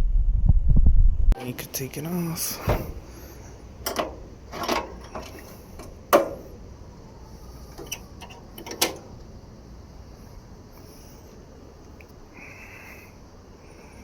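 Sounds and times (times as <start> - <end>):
metallic clicks and knocks of hardware: 3.8 - 6.6, 7.7 - 9.2.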